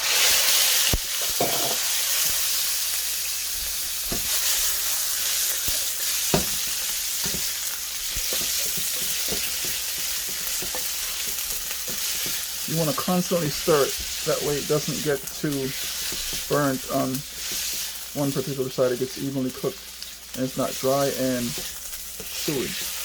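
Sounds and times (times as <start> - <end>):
chicken frying in hot oil: 0.0 - 23.0
utensil knocking and scraping pot: 1.4 - 1.9, 4.0 - 18.6, 20.6 - 23.0.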